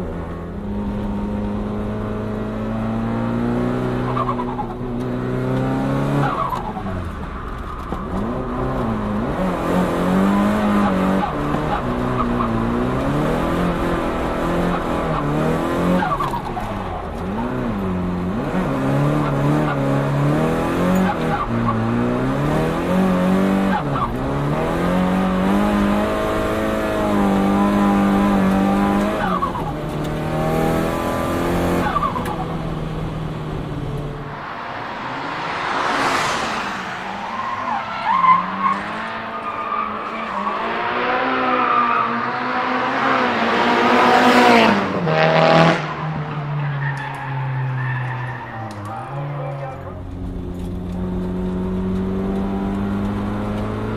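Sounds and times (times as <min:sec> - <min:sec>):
car engine revving hard: 0:00.6 - 0:06.6, 0:08.1 - 0:46.4, 0:48.7 - 0:53.9
tyre squeal: 0:46.6 - 0:49.9.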